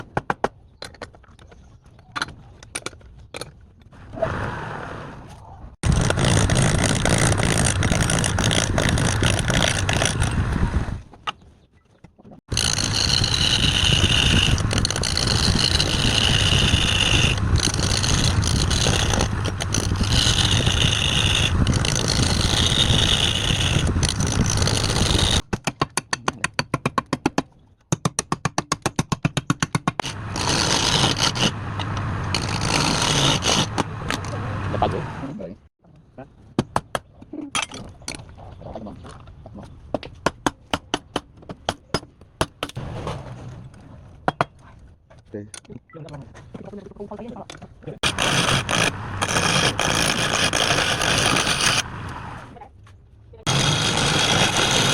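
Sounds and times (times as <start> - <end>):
wood lathe tool scraping: 5.8 - 10.4, 12.5 - 25.4, 30.0 - 34.4, 48.0 - 52.2, 53.5 - 54.9.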